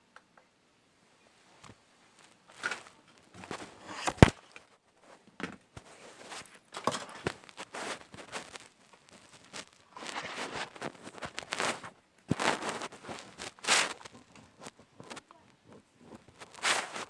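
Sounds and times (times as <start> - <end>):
packaging rustling: 5.8 - 15.2, 16.1 - 17.0.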